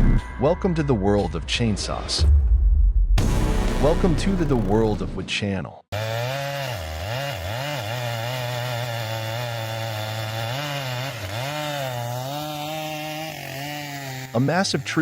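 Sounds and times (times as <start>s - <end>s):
chainsaw cutting wood: 6.0s - 15.0s.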